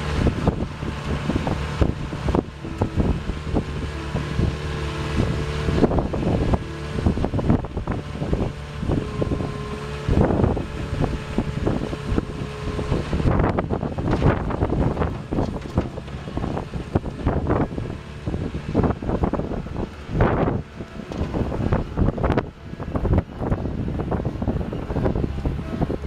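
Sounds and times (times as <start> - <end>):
diesel engine running: 0.0 - 26.0
machine bucket clanking: 13.2 - 18.8.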